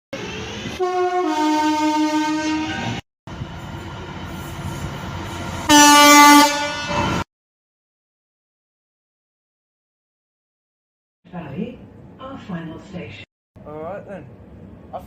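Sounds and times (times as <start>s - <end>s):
train passing: 0.2s - 7.2s, 13.8s - 15.0s
train horn: 0.7s - 3.0s, 5.7s - 7.2s.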